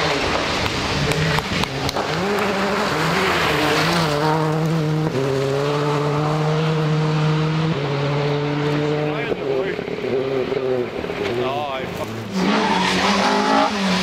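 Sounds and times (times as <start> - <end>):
rally car engine under throttle: 0.0 - 14.0.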